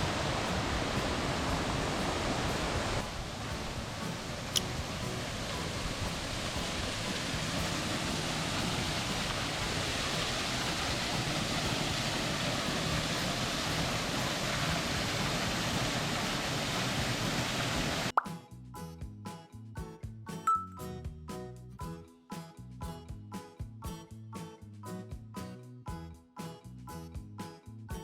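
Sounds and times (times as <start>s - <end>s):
waterfall roaring: 0.0s - 18.1s.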